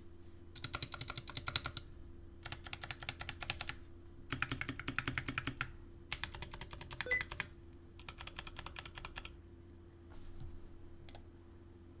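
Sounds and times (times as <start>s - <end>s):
mechanical keyboard typing: 0.6s - 1.8s, 2.4s - 9.4s.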